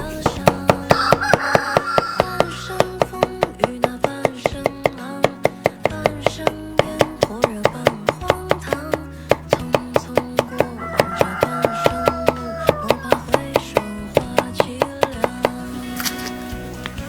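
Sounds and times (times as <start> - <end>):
guitar background music: 0.0 - 17.0
knife chopping on cutting board: 0.3 - 15.6.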